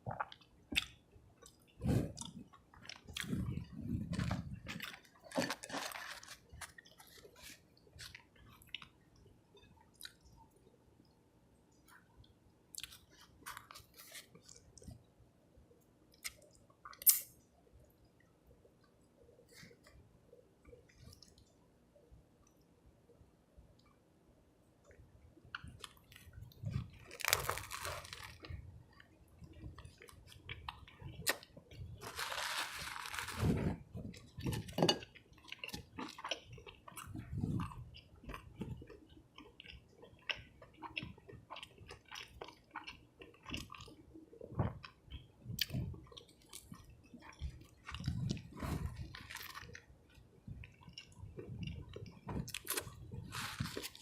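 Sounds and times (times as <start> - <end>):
chewing and crunching: 0.0 - 10.4, 24.8 - 54.0
crunching bites: 26.9 - 28.6.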